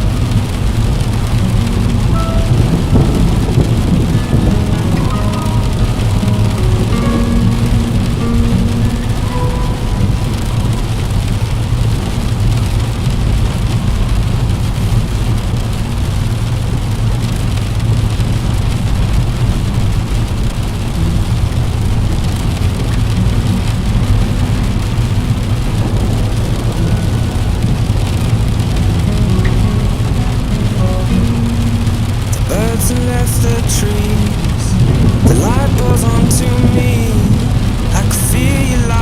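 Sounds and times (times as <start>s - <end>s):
deep low rumble: 0.0s - 39.0s
rain on a window: 0.0s - 39.0s.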